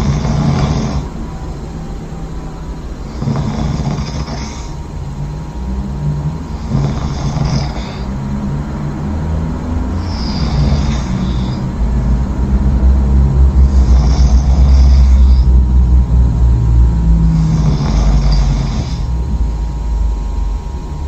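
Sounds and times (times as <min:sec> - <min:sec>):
person snoring: 0:00.0 - 0:01.4, 0:03.0 - 0:05.8, 0:06.4 - 0:08.6, 0:09.3 - 0:12.3, 0:13.5 - 0:15.8, 0:17.2 - 0:19.6.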